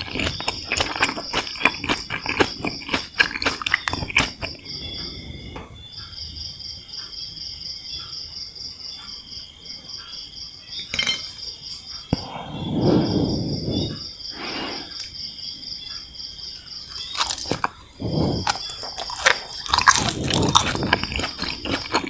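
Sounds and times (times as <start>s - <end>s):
crunchy chewing of candy: 0.0s - 5.5s, 16.7s - 22.0s
cricket chirring: 0.0s - 22.0s.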